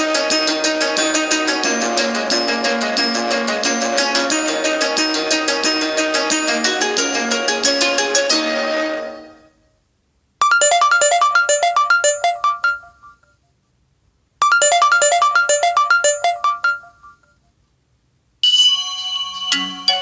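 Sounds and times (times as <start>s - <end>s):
different phone ringtone: 10.4s - 13.3s, 14.4s - 17.4s, 18.4s - 20.0s
phone ringtone melody: 10.4s - 13.3s, 14.4s - 17.3s, 18.4s - 20.0s.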